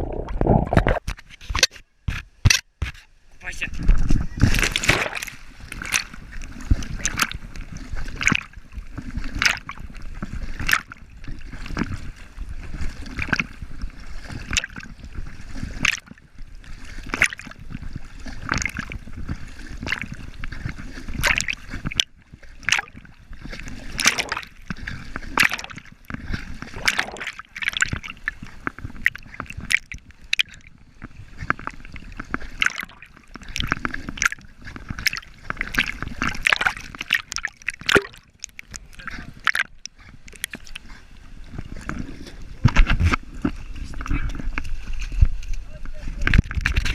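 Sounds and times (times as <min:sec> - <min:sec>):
low rumble: 0:00.0 - 0:01.0.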